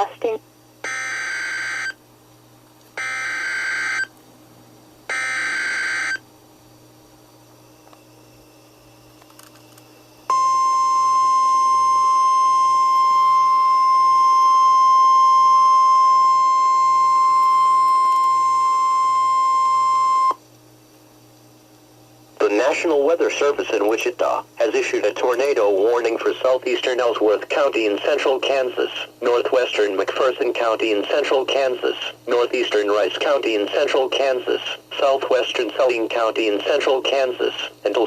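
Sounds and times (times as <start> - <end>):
steady high warning tone: 0.0 - 2.0, 3.0 - 4.1, 5.1 - 6.3, 7.4 - 20.4.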